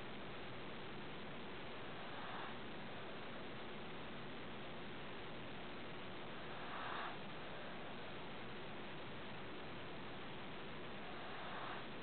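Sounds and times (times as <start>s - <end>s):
steady background hiss: 0.0s - 12.0s
pet snoring softly: 1.8s - 3.4s, 6.2s - 8.2s, 11.0s - 12.0s.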